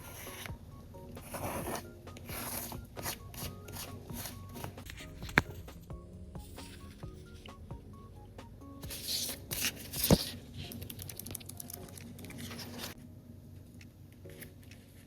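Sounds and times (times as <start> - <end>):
soft background music: 0.0 - 15.0
paper rustling and crinkling: 8.9 - 13.0.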